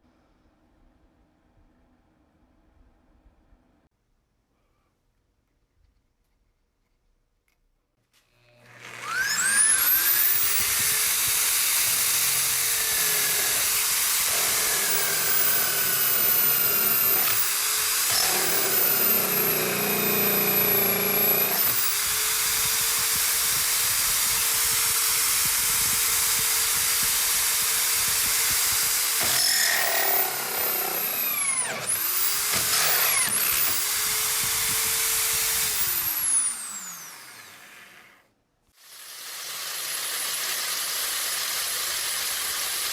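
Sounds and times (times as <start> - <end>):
electric drill motor hissing: 8.5 - 38.2, 38.8 - 42.9.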